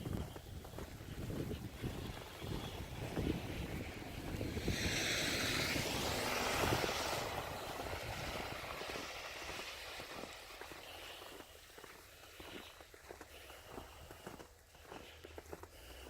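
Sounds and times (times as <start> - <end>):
wind buffeting microphone: 0.0 - 10.4
tyres hissing through slush: 1.7 - 14.4.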